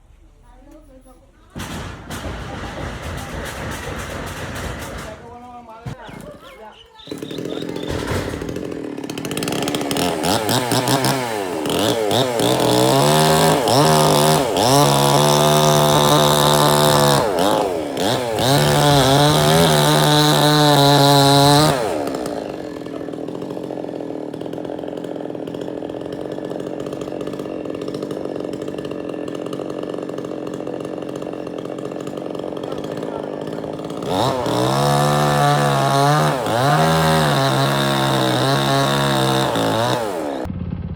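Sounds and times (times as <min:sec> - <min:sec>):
chainsaw engine revving: 0:01.7 - 0:40.5.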